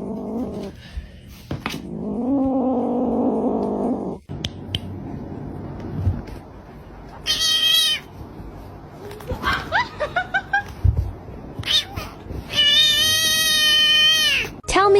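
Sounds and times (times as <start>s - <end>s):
cat meowing: 7.2s - 8.1s, 11.6s - 14.6s
cat yowling: 7.2s - 8.1s, 11.6s - 14.6s.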